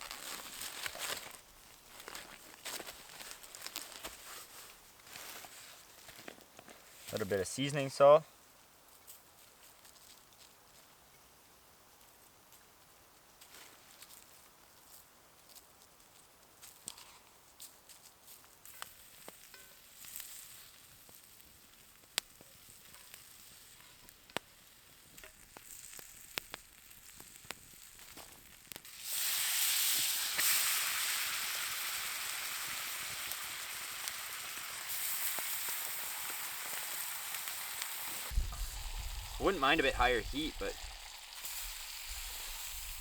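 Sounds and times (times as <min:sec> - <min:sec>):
meat sizzling in a pan: 0:18.6 - 0:43.0.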